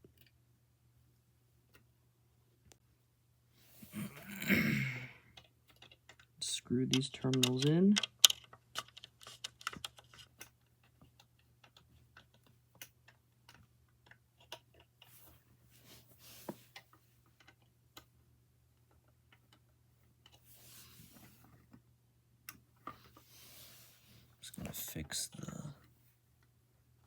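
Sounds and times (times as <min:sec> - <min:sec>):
soft handling noise: 0:14.7 - 0:17.6, 0:20.1 - 0:21.9.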